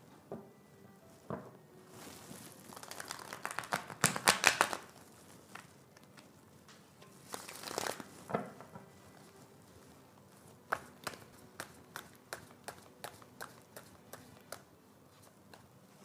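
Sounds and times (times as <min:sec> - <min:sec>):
cards being shuffled: 0:02.0 - 0:06.3, 0:07.3 - 0:08.6, 0:10.7 - 0:14.6.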